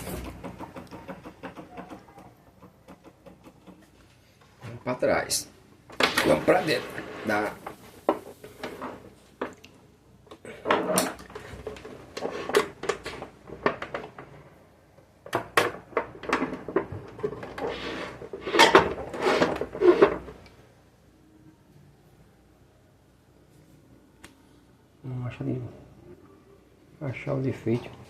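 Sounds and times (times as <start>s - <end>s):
metallic clattering and knocking: 0.0s - 4.0s.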